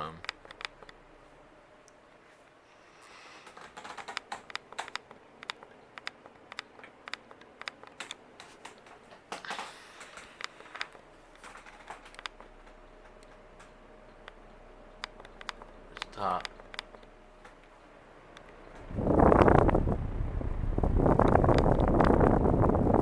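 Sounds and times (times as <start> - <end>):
light clicks and ticks: 0.0 - 1.0, 3.4 - 18.9, 21.1 - 23.0
ceiling fan motor hum: 0.0 - 23.0.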